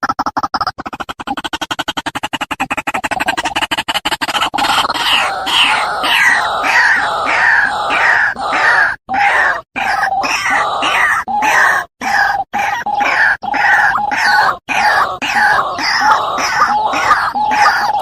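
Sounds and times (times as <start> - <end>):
waterhen calling: 4.2 - 18.0.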